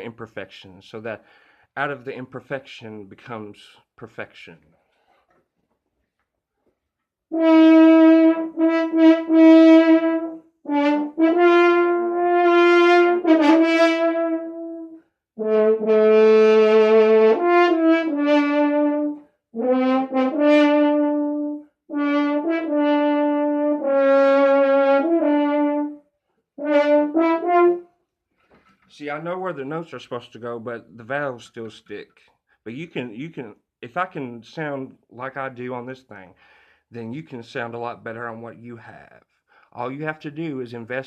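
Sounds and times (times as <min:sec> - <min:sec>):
person speaking: 0:00.0 - 0:04.7, 0:28.9 - 0:41.0
brass horn playing: 0:07.3 - 0:28.0.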